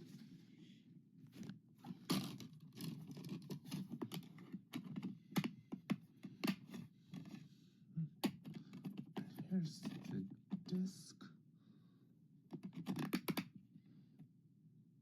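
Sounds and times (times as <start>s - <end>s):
plastic case clicking: 12.5s - 13.5s.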